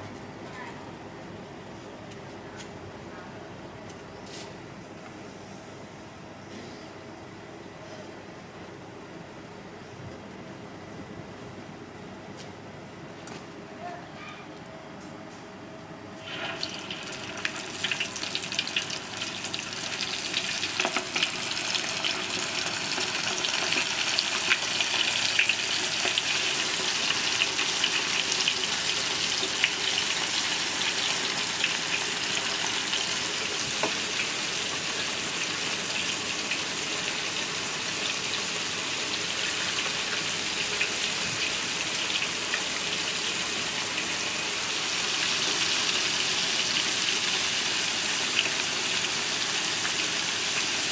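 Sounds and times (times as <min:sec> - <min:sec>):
food sizzling in hot oil: 0:16.2 - 0:50.9.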